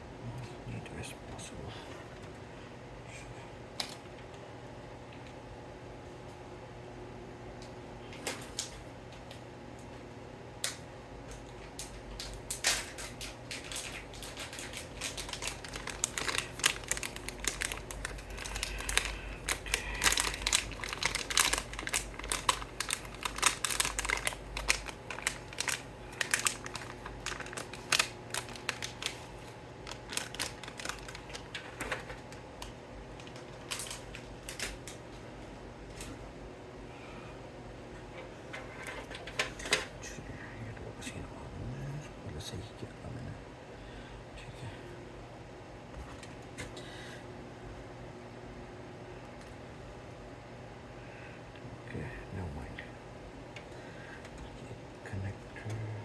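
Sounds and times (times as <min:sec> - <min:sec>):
hands handling plastic parts: 0:11.7 - 0:29.2.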